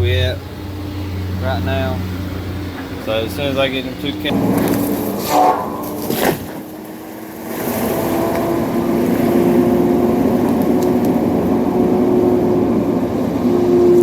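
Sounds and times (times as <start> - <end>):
heavy machine engine humming: 0.0 - 14.0.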